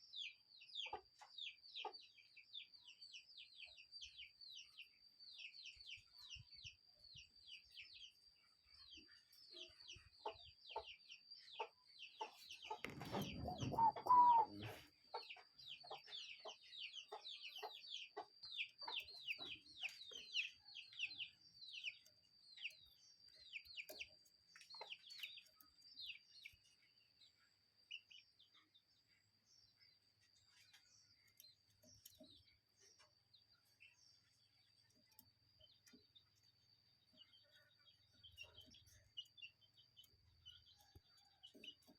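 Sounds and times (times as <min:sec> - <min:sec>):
bird calling high falling notes: 0:13.2 - 0:14.8.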